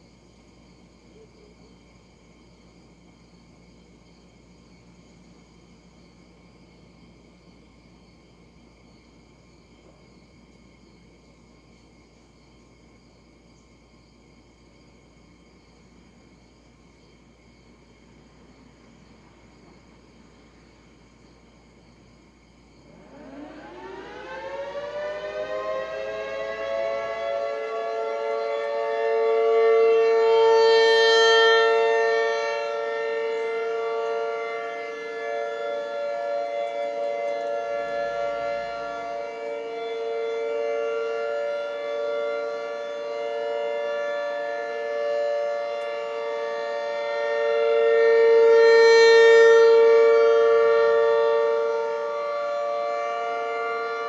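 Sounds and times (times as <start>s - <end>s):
rotating warning siren wailing: 22.8s - 54.0s.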